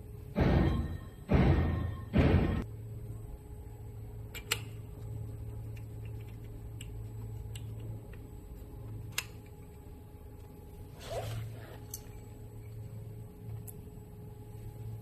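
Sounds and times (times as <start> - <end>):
low steady hum: 0.0 - 15.0
drum-like hit in music: 0.4 - 2.6.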